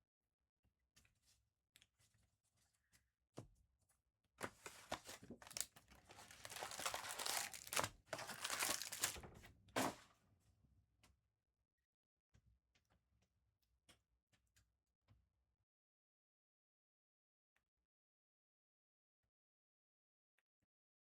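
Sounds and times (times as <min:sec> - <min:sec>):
wrapper tearing and crinkling: 0:04.5 - 0:09.2.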